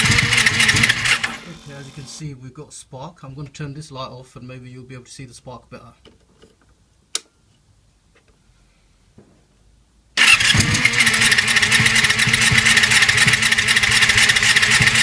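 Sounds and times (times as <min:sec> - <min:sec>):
electric starter cranking engine: 0:00.0 - 0:02.2, 0:10.2 - 0:15.0.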